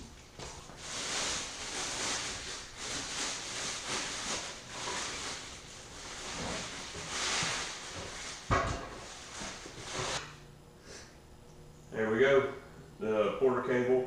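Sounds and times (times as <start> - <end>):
packaging rustling and scraping: 0.4 - 10.3.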